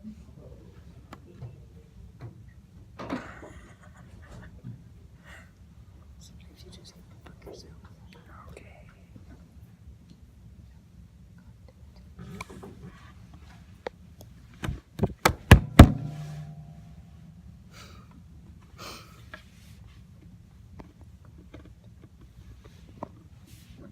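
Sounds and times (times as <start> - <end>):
sharp knocks: 15.0 - 17.2.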